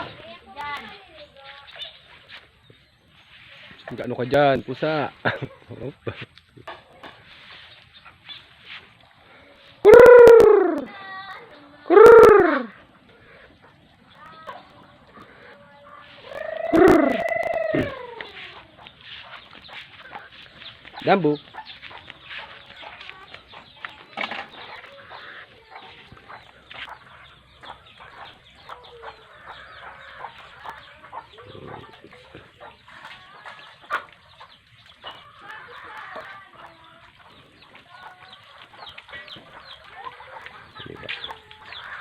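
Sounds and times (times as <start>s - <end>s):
chickens clucking: 0.0s - 42.0s.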